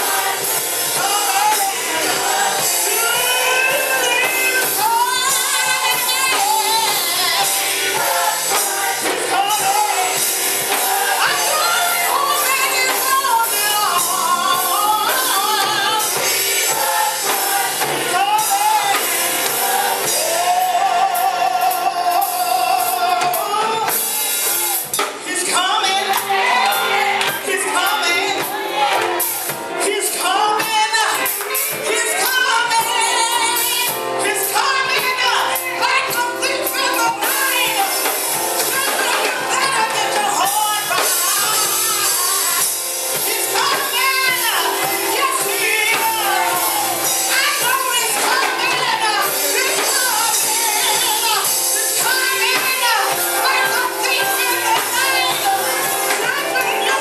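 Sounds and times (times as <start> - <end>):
gospel choir singing: 0.0 - 57.0
instrumental accompaniment: 0.0 - 57.0
woman singing lead: 0.0 - 57.0.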